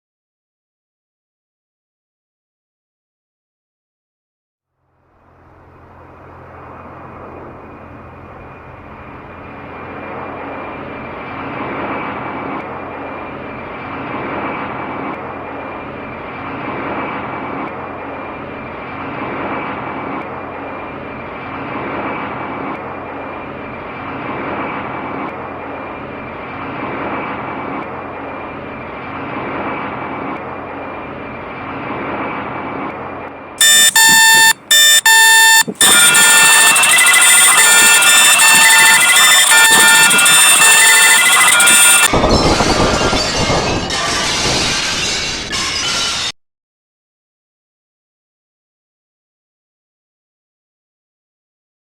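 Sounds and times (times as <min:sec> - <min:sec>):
harsh electronic alarm: 0:33.6 - 0:42.5.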